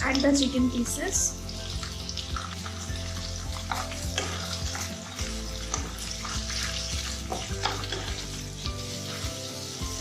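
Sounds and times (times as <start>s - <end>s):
chicken sizzling in hot oil: 0.0s - 10.0s
spatula scraping pan: 2.2s - 10.0s.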